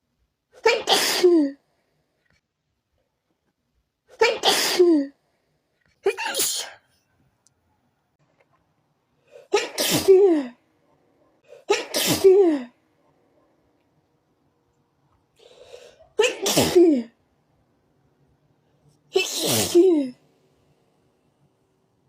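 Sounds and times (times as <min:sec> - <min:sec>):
person sneezing: 0:00.6 - 0:01.6, 0:04.1 - 0:05.1, 0:06.1 - 0:06.9, 0:09.3 - 0:10.6, 0:11.5 - 0:12.8, 0:15.5 - 0:17.1, 0:19.1 - 0:20.2.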